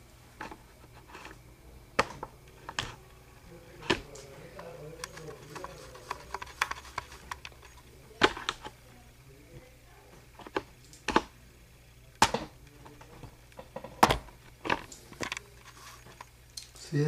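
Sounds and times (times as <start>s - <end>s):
faint steady hum: 0.0s - 17.0s
sharp clicks and knocks: 10.4s - 11.3s.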